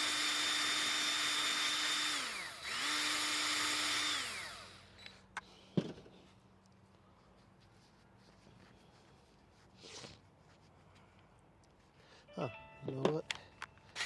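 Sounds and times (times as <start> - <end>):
power tool spinning wire brush: 0.0 - 5.1.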